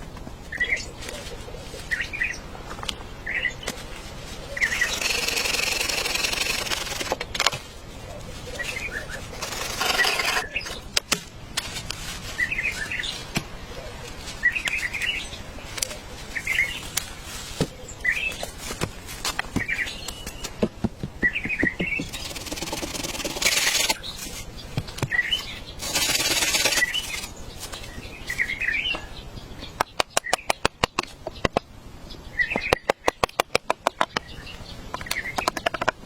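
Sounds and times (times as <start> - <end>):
bird chirping: 4.5 - 7.4, 21.2 - 36.0
sharp taps and clicks: 29.8 - 31.7, 32.5 - 34.3, 34.9 - 36.0.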